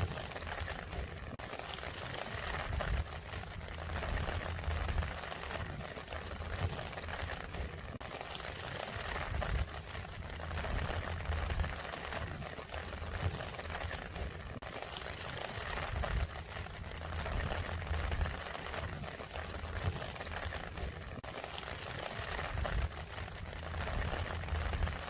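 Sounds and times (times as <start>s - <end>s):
rain falling: 0.0s - 25.0s
low rumble: 3.6s - 7.9s, 10.2s - 14.6s, 15.9s - 18.8s, 22.4s - 25.0s.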